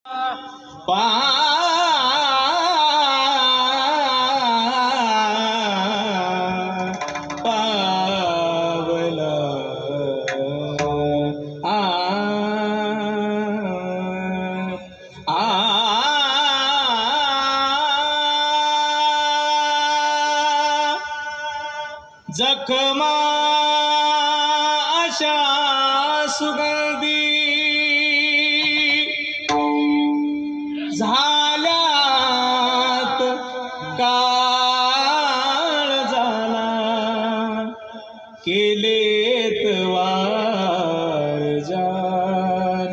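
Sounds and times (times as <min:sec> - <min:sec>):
man singing long note: 0:22.5 - 0:37.8
person singing long vowel: 0:28.3 - 0:32.5.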